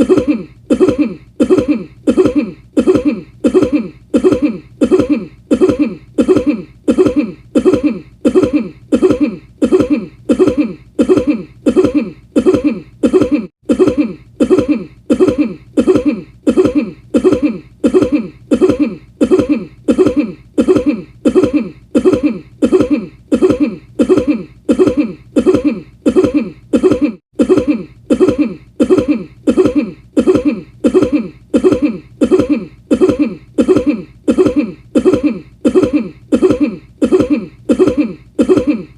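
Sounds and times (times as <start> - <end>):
short cough looped: 0.0 - 38.9.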